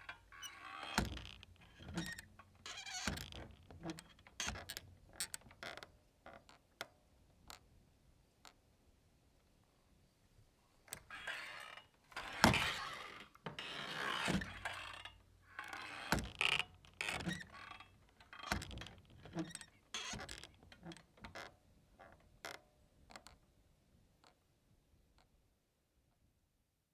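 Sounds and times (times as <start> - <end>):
saloon doors creaking and knocking: 0.8 - 5.8, 15.7 - 21.4.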